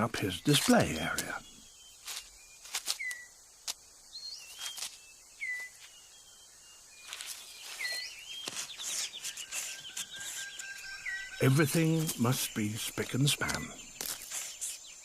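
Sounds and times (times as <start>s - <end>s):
whistled bird notes: 0.0s - 3.4s, 4.1s - 15.0s
high insect tone: 0.0s - 15.0s
leaf litter snapping and rustling: 0.5s - 1.3s, 2.0s - 3.8s, 4.5s - 5.9s, 7.0s - 10.8s, 13.4s - 14.8s.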